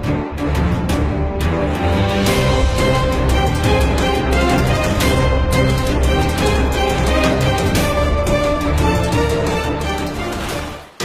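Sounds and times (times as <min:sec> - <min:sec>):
dramatic music with steady beat: 0:00.0 - 0:11.0.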